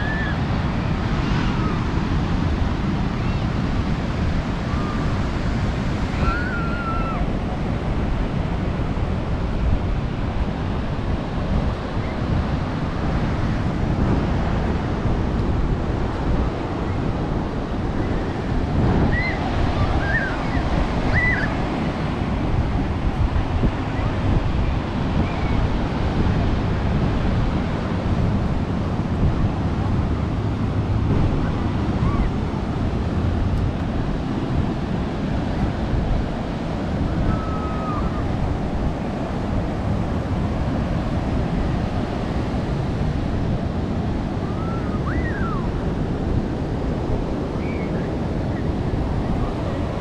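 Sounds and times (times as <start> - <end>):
ocean surf washing: 0.0 - 50.0
wind buffeting microphone: 0.0 - 50.0
faint short high calls: 19.1 - 21.5.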